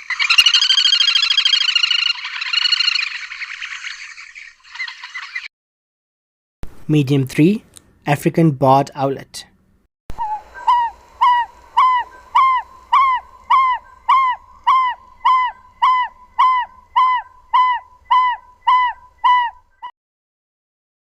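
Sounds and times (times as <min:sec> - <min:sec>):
owlet calling: 0:00.0 - 0:05.5, 0:10.1 - 0:19.9.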